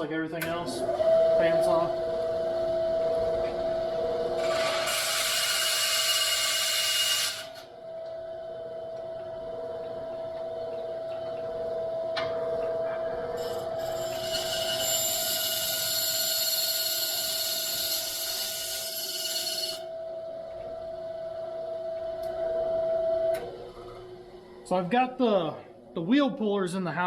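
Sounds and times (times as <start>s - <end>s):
bandsaw motor hum: 0.0s - 24.2s
bandsaw blade rasping cut: 4.4s - 7.6s, 13.4s - 19.8s.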